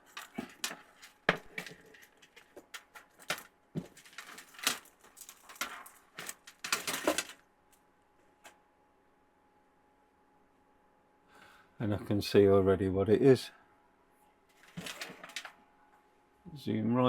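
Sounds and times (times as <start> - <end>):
plastic tubes clicking and rustling: 0.0 - 7.4, 14.6 - 15.6.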